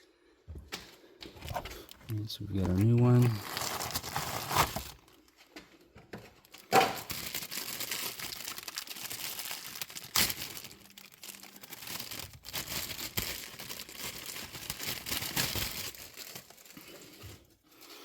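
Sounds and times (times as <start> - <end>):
packaging crinkling and rustling: 1.3 - 5.5, 6.1 - 18.0.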